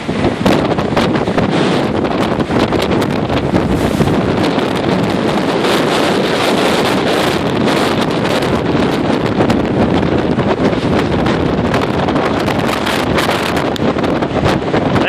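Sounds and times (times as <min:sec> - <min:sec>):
strong wind on microphone: 0:00.0 - 0:15.0.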